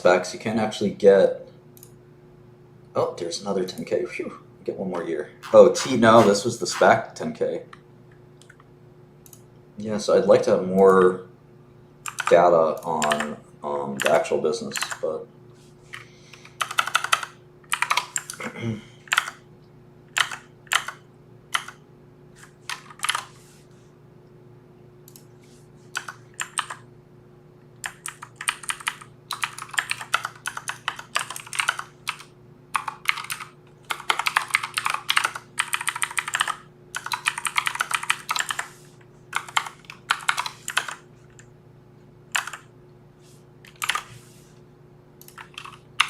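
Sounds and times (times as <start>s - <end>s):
faint hum: 0.0s - 46.0s
computer keyboard typing: 12.1s - 13.4s, 14.8s - 15.0s, 16.5s - 18.4s, 19.1s - 19.4s, 20.1s - 21.8s, 22.7s - 23.3s, 25.9s - 26.8s, 27.8s - 41.5s, 42.3s - 42.7s, 43.7s - 44.1s, 45.2s - 46.0s.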